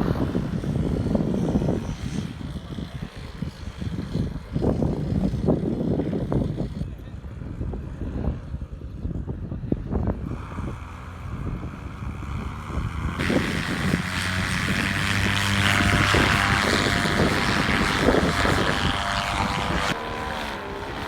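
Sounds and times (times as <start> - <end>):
paramotor engine and propeller: 0.0 - 21.0.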